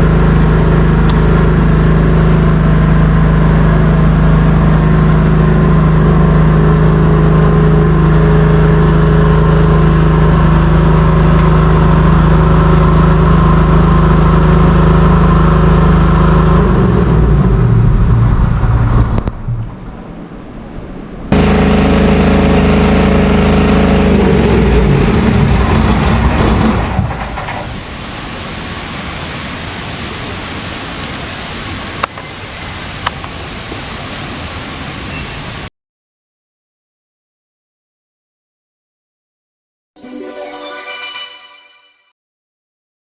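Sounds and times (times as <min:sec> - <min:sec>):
diesel generator engine running: 0:19.6 - 0:25.1.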